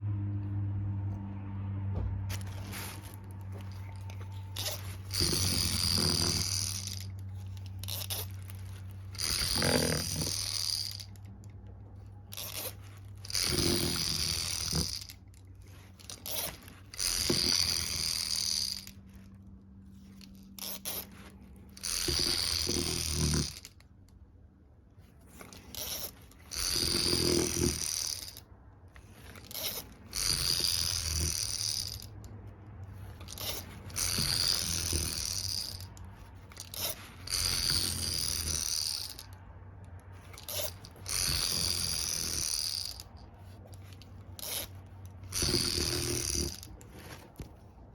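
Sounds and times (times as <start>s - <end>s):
toy rattling and jingling: 2.3s - 11.3s, 12.3s - 19.0s, 29.3s - 32.2s, 33.0s - 39.3s
toy motor humming: 2.3s - 24.2s, 25.0s - 47.8s.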